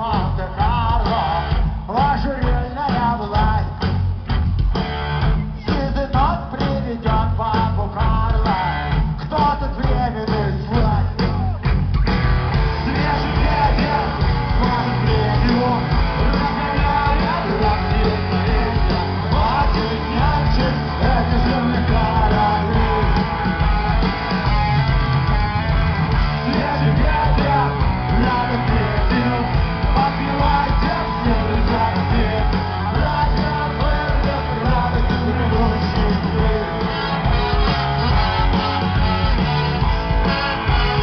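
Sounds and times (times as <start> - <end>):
person singing: 0.0 - 3.8, 12.6 - 24.0, 26.3 - 41.0
electric guitar: 0.0 - 41.0
live rock band: 0.0 - 41.0.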